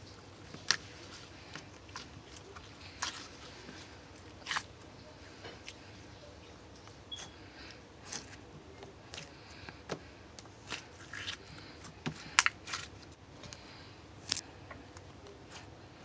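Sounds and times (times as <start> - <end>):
slime squished by hand: 0.3 - 6.0, 7.1 - 8.4, 9.0 - 13.0.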